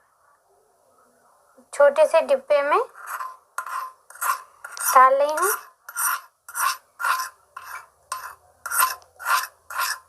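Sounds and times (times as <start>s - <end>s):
utensil scraping a pan: 2.9s - 10.0s.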